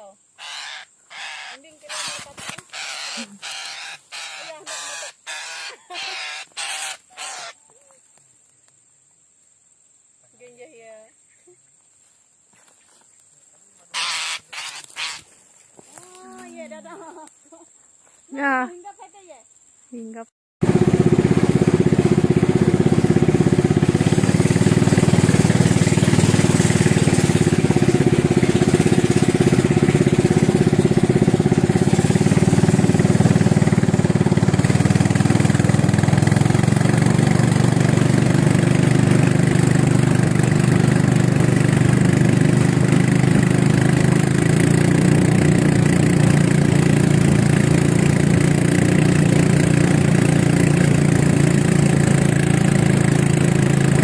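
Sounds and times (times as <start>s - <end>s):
small engine running: 0.4s - 7.5s, 13.9s - 15.2s, 20.6s - 54.0s.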